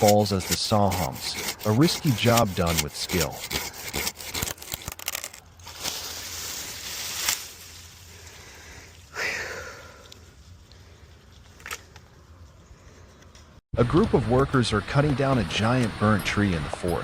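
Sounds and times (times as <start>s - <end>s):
wood crackling and breaking: 4.2s - 7.8s.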